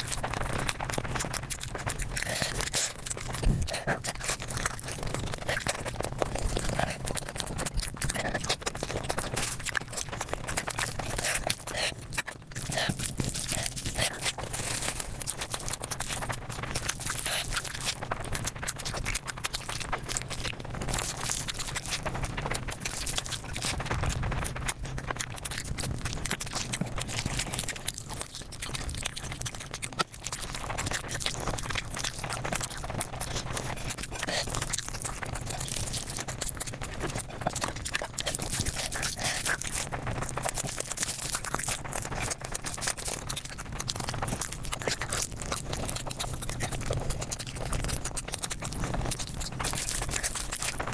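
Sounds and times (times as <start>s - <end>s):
crinkling and rustling: 0.0s - 50.9s
fast chewing and crunching: 0.0s - 50.9s.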